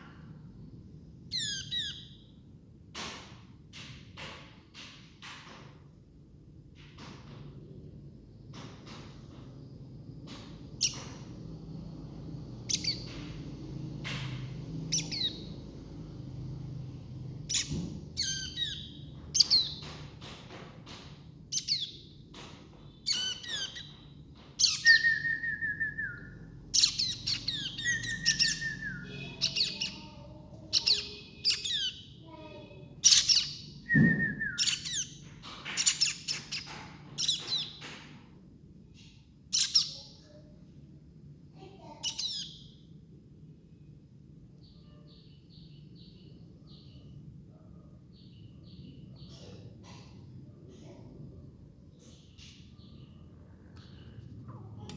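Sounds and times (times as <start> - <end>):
baby birds chirping: 1.3 - 2.3, 8.5 - 38.3, 38.9 - 40.4, 41.7 - 43.0, 48.0 - 51.2, 51.9 - 54.9
faint low hum: 36.0 - 54.9.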